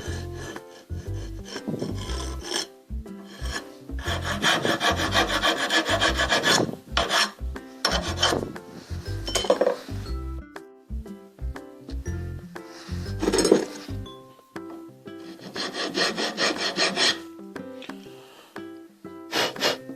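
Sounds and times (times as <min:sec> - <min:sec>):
background music with steady beat: 0:00.0 - 0:19.9
hand sanding of brake part: 0:03.4 - 0:08.3, 0:15.2 - 0:17.3.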